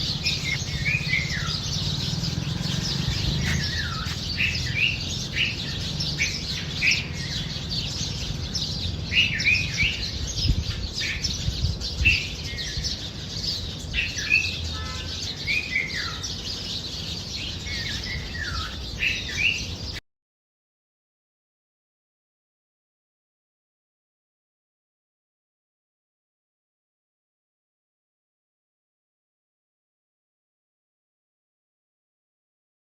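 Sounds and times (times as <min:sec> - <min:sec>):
bulbuls chirping: 0:00.0 - 0:20.0.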